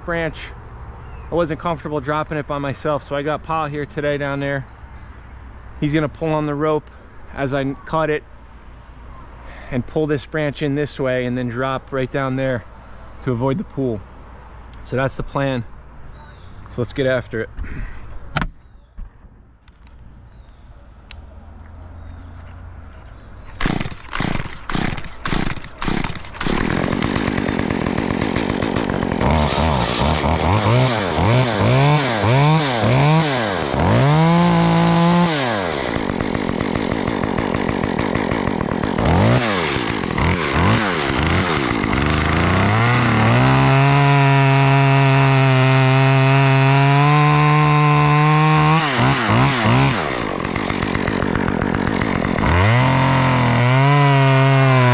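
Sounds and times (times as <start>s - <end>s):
chainsaw pull-start: 23.6s - 54.9s
chainsaw revving: 23.6s - 54.9s.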